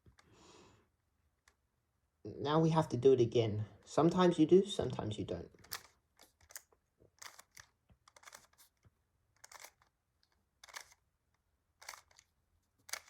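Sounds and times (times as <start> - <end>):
faint plastic puzzle cube clicks: 5.6 - 13.0.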